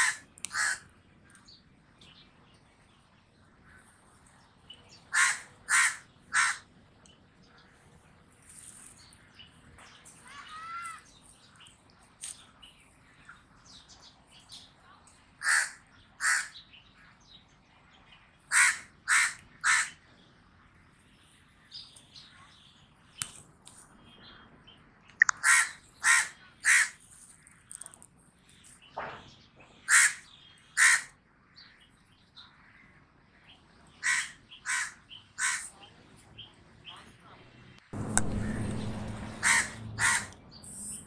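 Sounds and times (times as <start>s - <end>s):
raven cawing: 0.0s - 0.9s, 5.1s - 6.7s, 15.4s - 16.6s, 18.5s - 20.0s, 25.4s - 27.0s, 29.9s - 30.2s, 30.8s - 31.1s, 34.0s - 35.7s, 38.0s - 40.8s.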